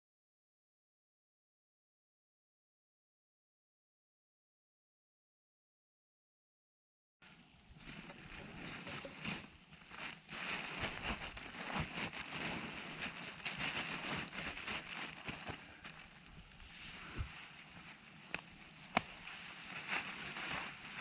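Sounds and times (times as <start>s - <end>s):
camping gear rustling and crinkling: 7.3s - 21.0s.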